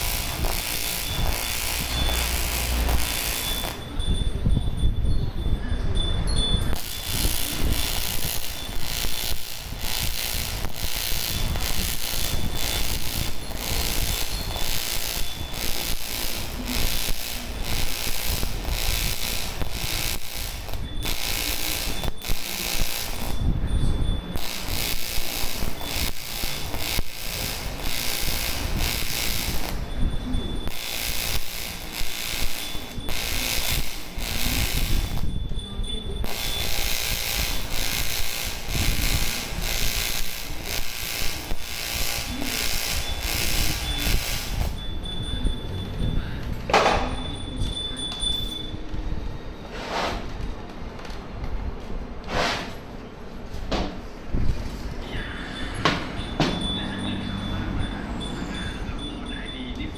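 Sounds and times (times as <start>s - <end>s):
welding arc buzzing hiss: 0.0s - 4.0s, 6.6s - 44.9s, 52.2s - 52.9s.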